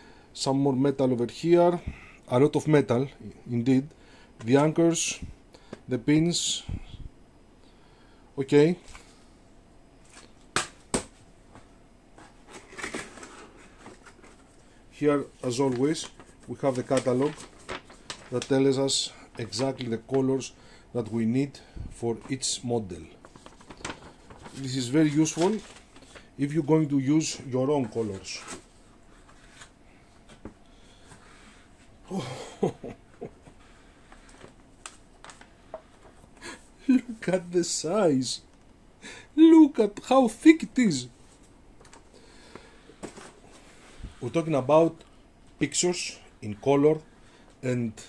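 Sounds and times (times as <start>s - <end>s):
light rustling of packaging: 10.0s - 32.0s, 32.6s - 37.8s, 40.4s - 48.0s.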